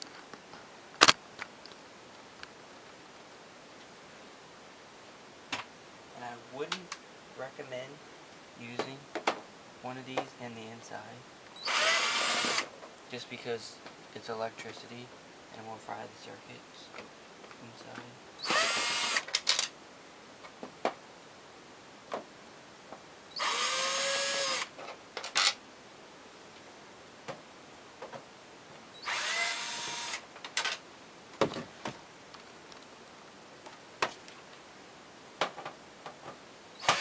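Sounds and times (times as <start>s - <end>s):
power drill whirring: 11.6s - 12.7s, 18.4s - 19.3s, 23.3s - 24.7s, 29.0s - 30.2s, 36.8s - 37.0s.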